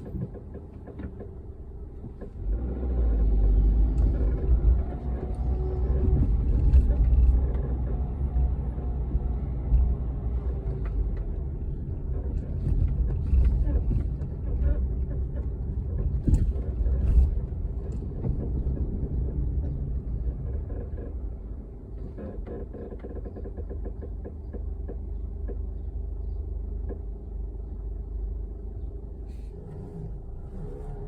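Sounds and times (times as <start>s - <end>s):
car rumbling on road: 0.0s - 31.0s
short creaks: 22.0s - 25.6s, 29.3s - 31.0s.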